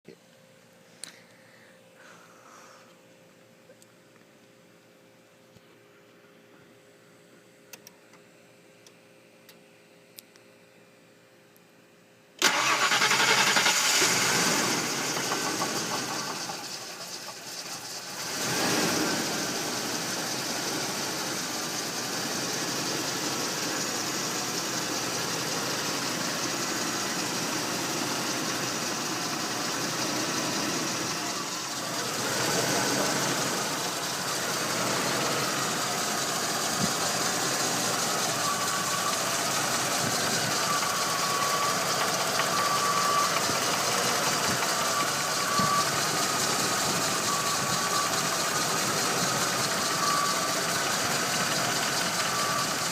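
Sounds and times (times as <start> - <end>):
car engine idling with knock: 14.0 - 52.9.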